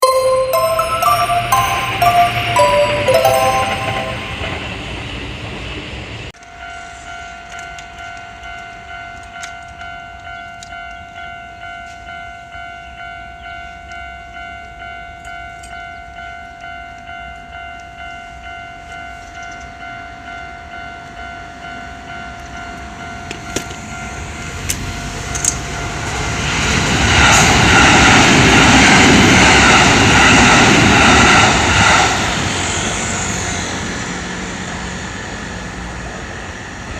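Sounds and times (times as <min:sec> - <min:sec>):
railroad crossing bell dinging: 0:00.0 - 0:05.8, 0:06.4 - 0:26.4
train passing over rails: 0:00.0 - 0:36.9.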